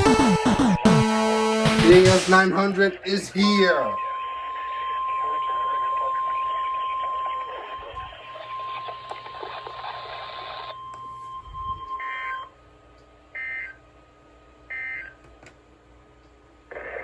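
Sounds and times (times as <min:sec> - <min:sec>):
warbling data bursts: 0:00.0 - 0:02.7
warning alarm tone: 0:00.0 - 0:02.8
radio hiss: 0:01.7 - 0:03.7.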